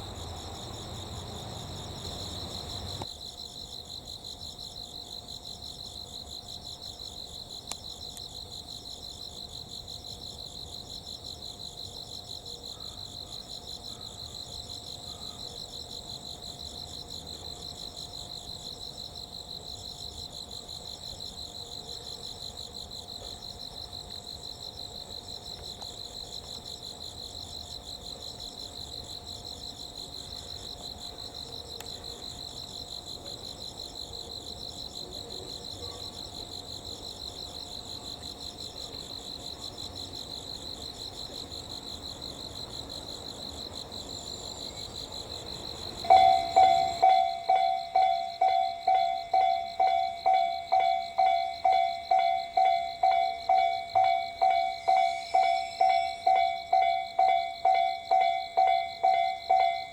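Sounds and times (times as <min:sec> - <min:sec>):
faint steady hum: 0:00.0 - 0:03.2
insects chirping: 0:00.0 - 0:59.9.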